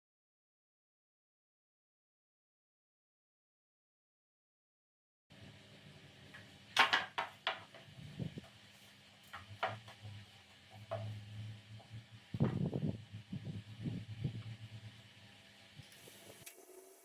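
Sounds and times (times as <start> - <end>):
hard objects knocking and clicking: 6.8 - 8.6, 9.2 - 12.7.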